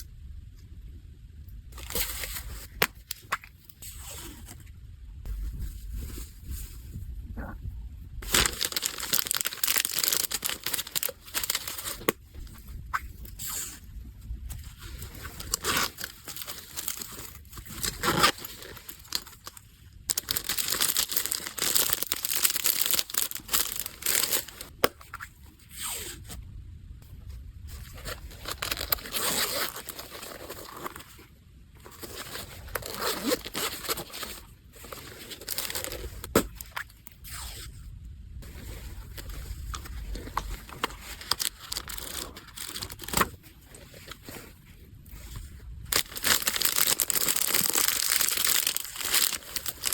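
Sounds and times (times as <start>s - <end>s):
packaging crinkling and tearing: 1.8s - 4.6s, 8.2s - 12.6s, 14.5s - 25.0s, 27.7s - 37.2s, 38.5s - 44.5s, 45.1s - 49.9s.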